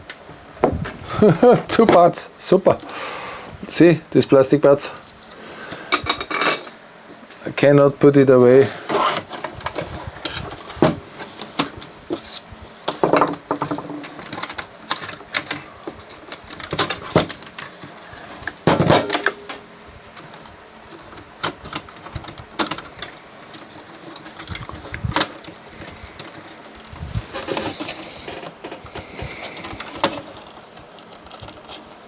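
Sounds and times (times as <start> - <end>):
plastic and metal parts clicking: 13.2 - 19.6, 20.2 - 31.8.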